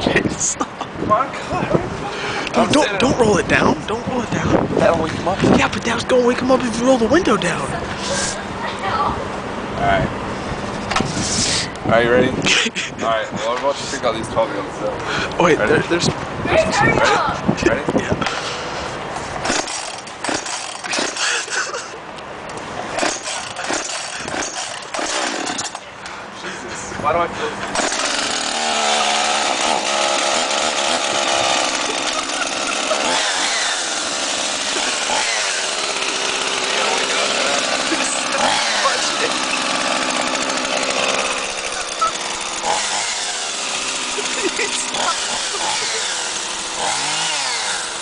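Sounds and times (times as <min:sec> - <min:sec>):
chainsaw starter cord pulls: 0:19.4 - 0:21.5, 0:23.0 - 0:25.9, 0:27.7 - 0:48.0.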